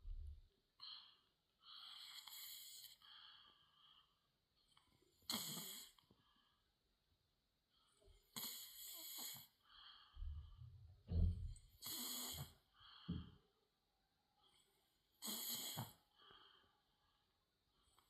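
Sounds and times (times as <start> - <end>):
girl snoring: 5.3 - 6.0, 8.4 - 9.5, 11.8 - 12.6, 15.2 - 16.0.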